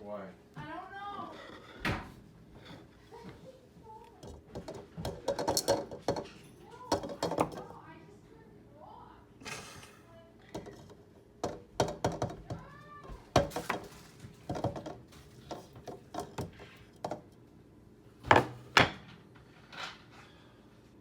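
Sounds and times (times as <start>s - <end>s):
dishes and utensils clattering: 4.1s - 7.8s, 10.5s - 17.4s.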